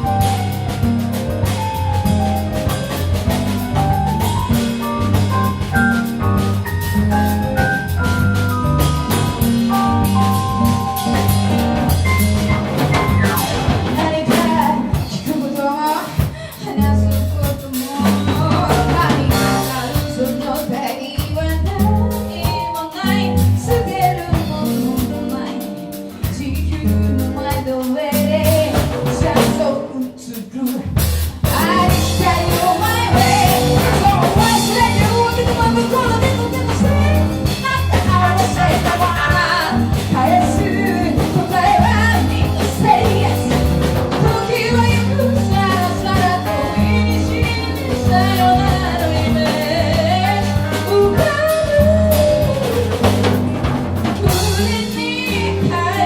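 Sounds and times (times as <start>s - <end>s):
band playing a song: 0.0s - 56.0s
person singing: 26.5s - 53.4s.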